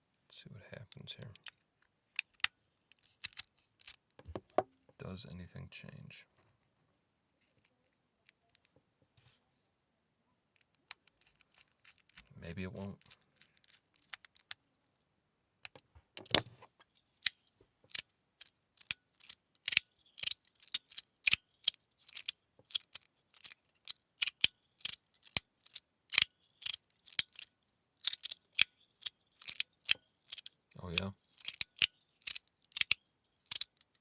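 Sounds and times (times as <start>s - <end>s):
metal fidget slider clicking: 3.1s - 4.0s, 17.2s - 34.0s.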